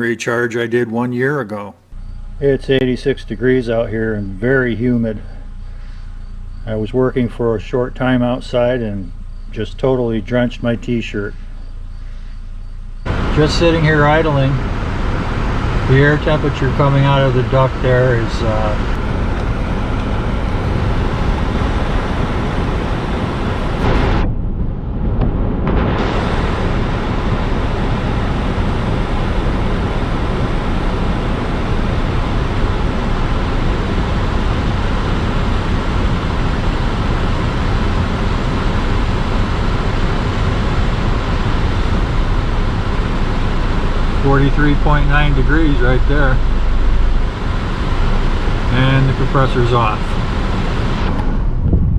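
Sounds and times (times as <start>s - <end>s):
car engine idling: 1.9s - 24.2s, 26.0s - 51.6s
air rushing from vent: 11.3s - 51.9s.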